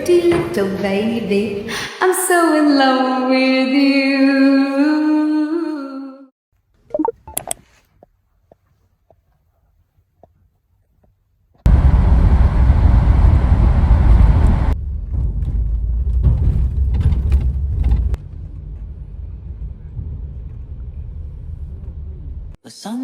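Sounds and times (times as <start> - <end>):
loud low rumbling: 11.7 - 22.6.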